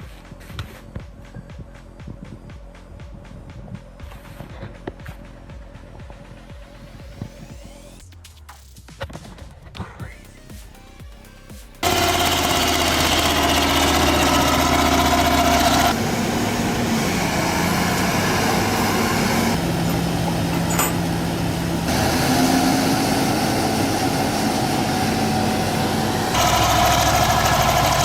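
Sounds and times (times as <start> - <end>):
heavy vehicle engine running: 11.8 - 28.0.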